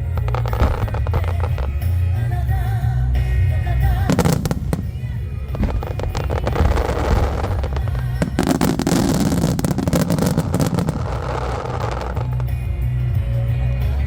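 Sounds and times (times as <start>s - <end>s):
fireworks bursting and crackling: 0.0s - 2.0s, 3.8s - 12.7s.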